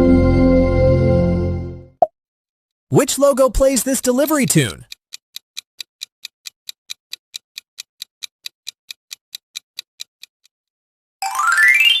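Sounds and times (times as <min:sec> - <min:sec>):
clock ticks: 0:03.0 - 0:10.6.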